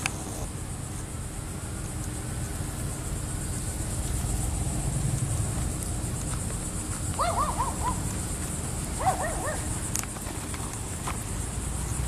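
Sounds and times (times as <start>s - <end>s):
low outdoor rumble: 0.0s - 12.0s
dog yipping: 7.2s - 8.0s, 9.0s - 9.7s.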